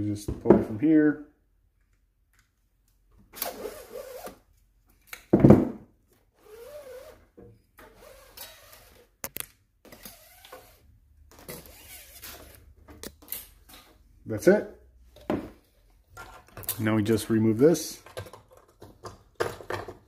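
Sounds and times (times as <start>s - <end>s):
welding wire scraping and squeaking: 9.9s - 10.9s, 11.5s - 12.7s.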